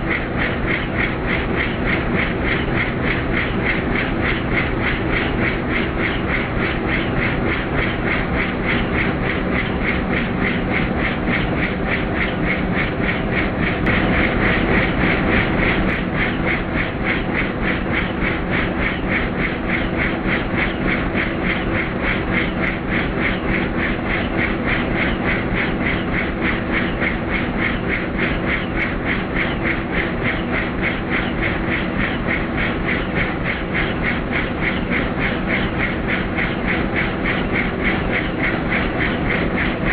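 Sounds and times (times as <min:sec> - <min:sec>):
engine and airflow rush: 0:00.0 - 0:23.8
helicopter rotor beat: 0:00.0 - 0:39.9.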